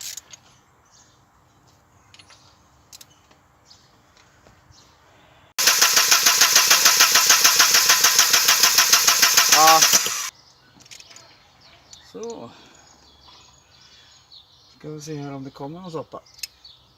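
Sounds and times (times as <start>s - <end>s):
car engine cranking: 5.6s - 10.3s.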